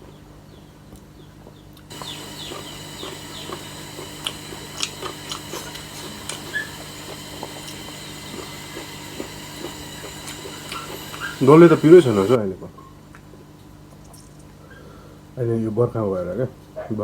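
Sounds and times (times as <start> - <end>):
chewing and lip smacks: 1.9 - 12.4
faint low hum: 1.9 - 12.4.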